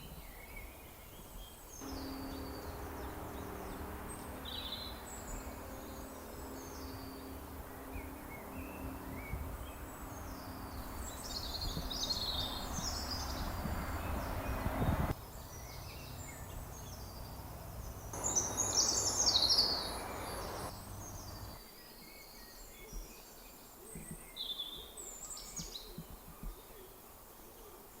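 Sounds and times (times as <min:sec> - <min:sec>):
songbirds singing and chirping: 0:00.0 - 0:28.0
low background rumble: 0:01.8 - 0:21.6.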